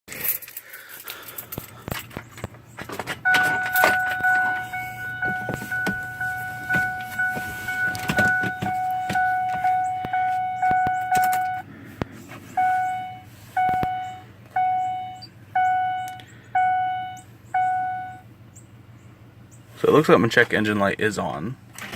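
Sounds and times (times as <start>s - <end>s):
clicks and rattles: 0.1s - 6.1s.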